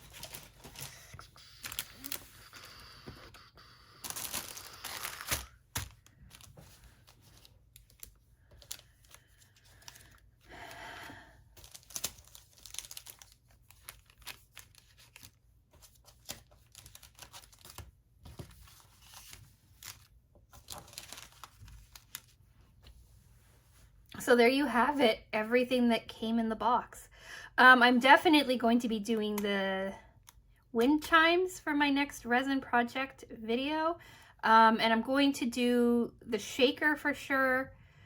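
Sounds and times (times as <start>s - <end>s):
plastic packaging crinkling: 0.0s - 22.4s.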